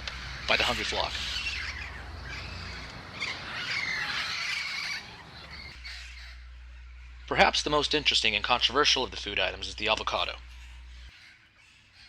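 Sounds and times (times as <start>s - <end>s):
parrots squawking: 0.0s - 6.4s.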